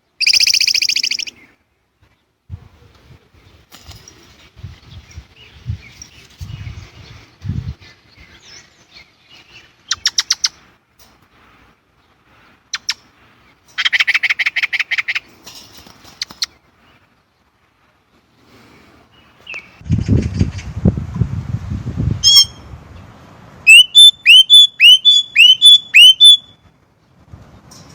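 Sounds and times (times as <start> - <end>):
blackbird harsh chattering calls: 0.2 - 1.4, 9.9 - 10.6, 12.7 - 13.1, 13.8 - 15.3, 23.7 - 26.5.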